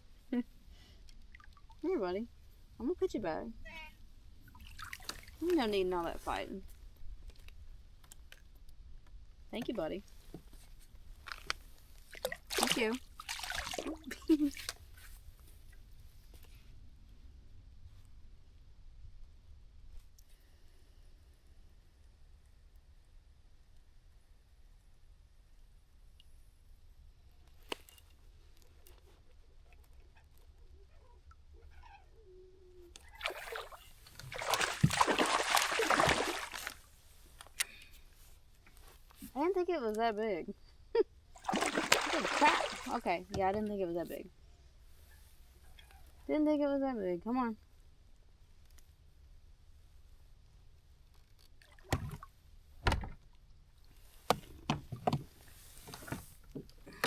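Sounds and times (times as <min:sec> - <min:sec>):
fish splashing in water: 0:12.1 - 0:14.1, 0:33.1 - 0:36.8, 0:41.4 - 0:43.0.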